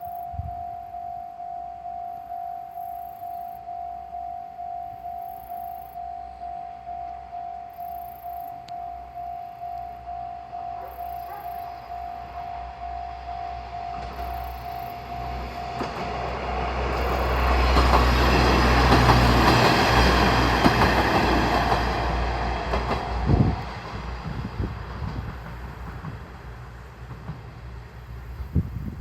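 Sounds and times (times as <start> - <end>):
crossing electronic warning bell: 0.0 - 20.3
diesel train engine rumble: 3.6 - 29.0
wheels clacking over rail joints: 13.9 - 27.8.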